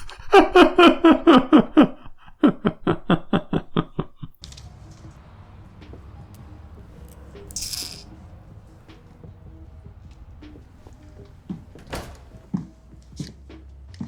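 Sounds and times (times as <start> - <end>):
person laughing hard: 0.0 - 4.4.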